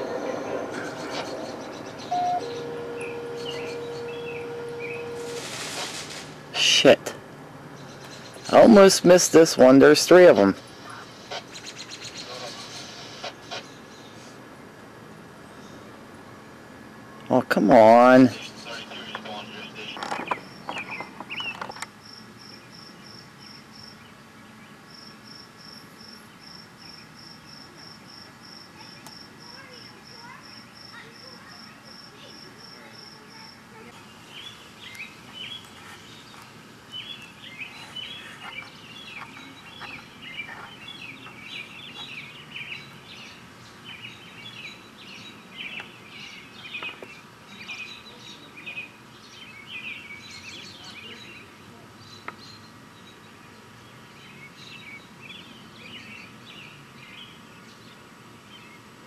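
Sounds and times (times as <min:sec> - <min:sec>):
bird chirps and twitters: 0:00.0 - 0:05.6, 0:18.3 - 0:21.8, 0:33.1 - 0:53.4
insects chirping: 0:00.0 - 0:06.5, 0:18.1 - 0:47.9.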